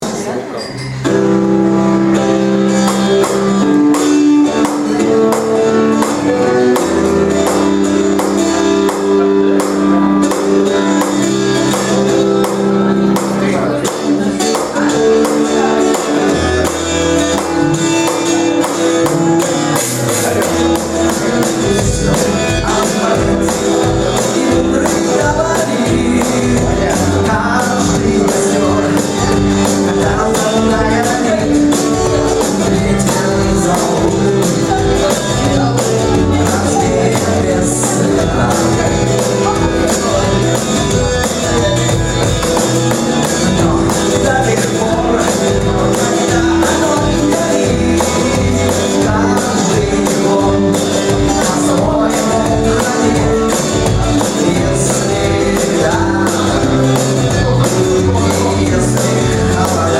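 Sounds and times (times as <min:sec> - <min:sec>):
live rock band playing: 0:00.0 - 0:59.9.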